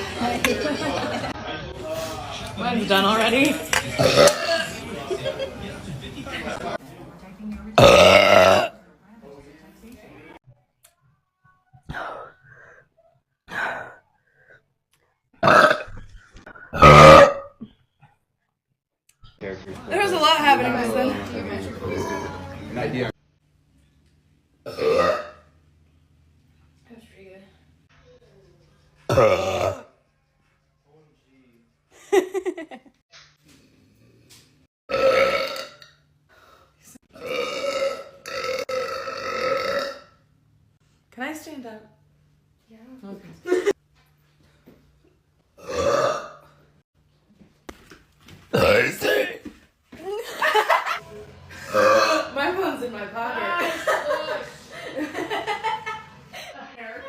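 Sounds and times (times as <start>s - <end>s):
woman burping: 4.0s - 4.8s, 7.8s - 8.8s, 15.4s - 16.1s, 16.7s - 17.7s, 24.7s - 25.4s, 29.1s - 29.9s, 34.9s - 35.8s, 37.1s - 40.2s, 45.6s - 46.5s, 48.5s - 49.4s, 51.6s - 52.4s.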